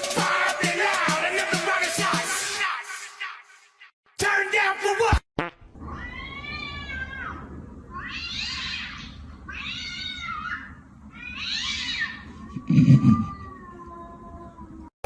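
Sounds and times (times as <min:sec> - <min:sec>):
cat meowing: 0:12.6 - 0:14.9.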